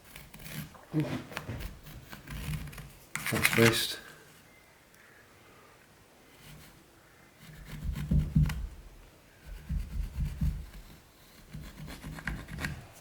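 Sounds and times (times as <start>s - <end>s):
light scratching: 0.0s - 4.5s, 6.3s - 6.8s.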